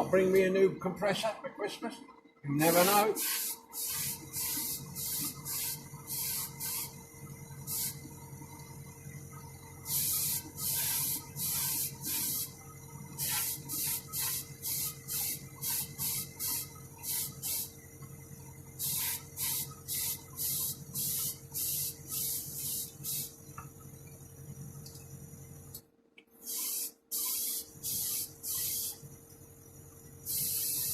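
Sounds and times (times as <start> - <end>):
air compressor humming: 0.0 - 0.6, 2.6 - 25.8, 26.4 - 30.9
airbrush spraying hiss: 2.7 - 7.0, 7.7 - 8.1, 9.8 - 12.6, 13.2 - 17.7, 18.8 - 23.4, 26.4 - 29.0, 30.3 - 30.9.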